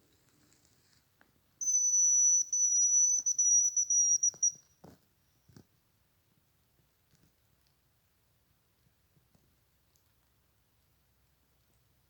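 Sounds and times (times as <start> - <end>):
grouse whistle: 1.6 - 4.7.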